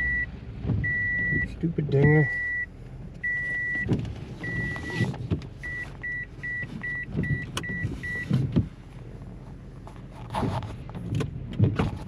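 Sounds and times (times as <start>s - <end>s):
car warning beeps: 0.0s - 8.6s
low vehicle rumble: 0.0s - 12.0s.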